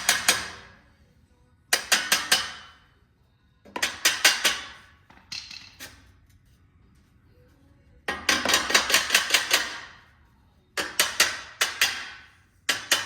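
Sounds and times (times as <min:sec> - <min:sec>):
hammer striking steel: 0:00.0 - 0:00.8, 0:01.7 - 0:02.9, 0:03.7 - 0:05.9, 0:08.1 - 0:10.0, 0:10.8 - 0:13.0.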